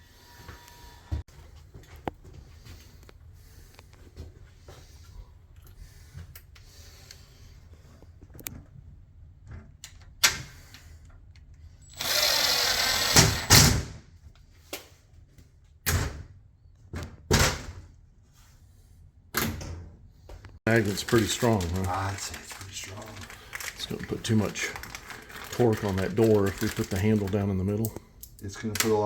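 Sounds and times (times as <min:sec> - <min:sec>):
power drill running: 0:11.9 - 0:13.5.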